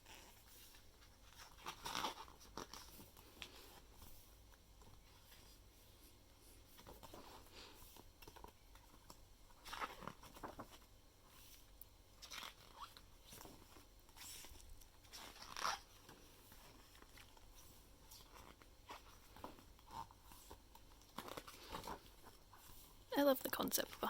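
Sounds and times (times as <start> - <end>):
pages turning: 6.7 - 23.0.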